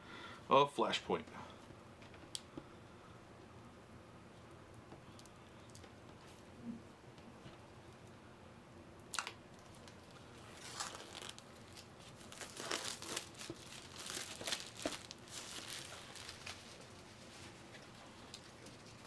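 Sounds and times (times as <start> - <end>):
plastic wrap crinkling: 9.1 - 19.0.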